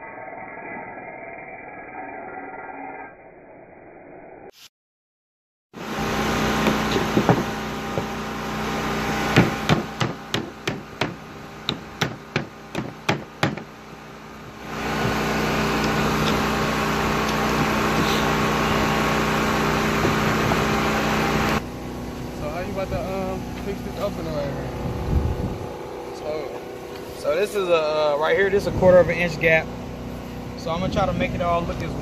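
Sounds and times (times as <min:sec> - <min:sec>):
steady machine hum: 0:05.8 - 0:32.0
nails being hammered into boards: 0:06.6 - 0:08.1, 0:09.3 - 0:13.7.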